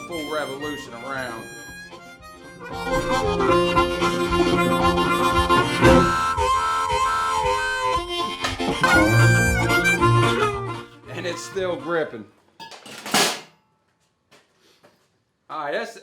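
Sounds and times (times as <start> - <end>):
low musical accompaniment: 0.0 - 12.2
harmonica playing long notes: 0.0 - 12.3.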